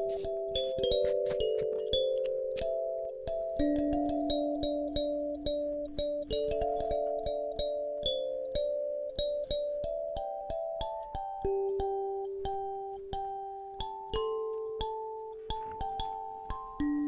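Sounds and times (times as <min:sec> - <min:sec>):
gentle keyboard melody: 0:00.0 - 0:17.0.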